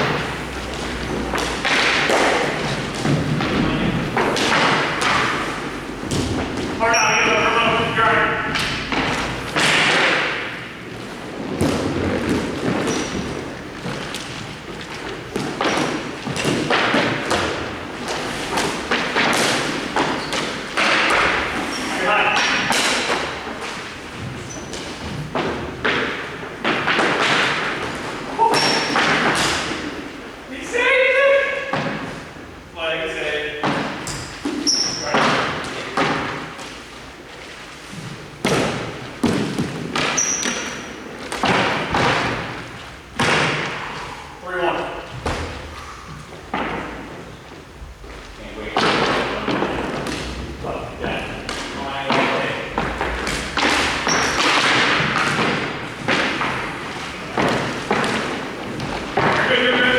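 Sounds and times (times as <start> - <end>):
loud knocks echoing in a hall: 0.0 - 59.9
thuds and knocks: 45.1 - 45.7.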